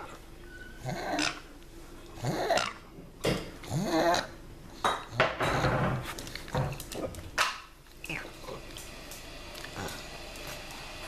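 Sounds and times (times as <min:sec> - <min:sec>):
dog squeaking: 0:00.5 - 0:01.5.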